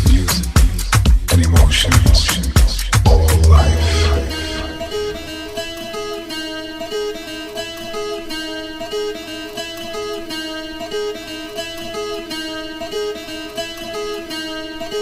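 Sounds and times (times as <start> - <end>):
afro house music: 0.0 - 6.1
plucked guitar riff: 1.7 - 15.0.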